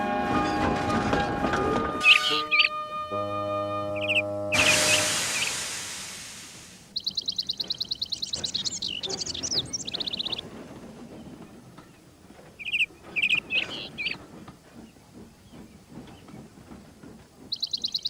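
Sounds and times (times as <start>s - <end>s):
bird trilling: 2.0s - 2.8s, 3.9s - 5.7s
short bird chirps: 4.0s - 6.2s.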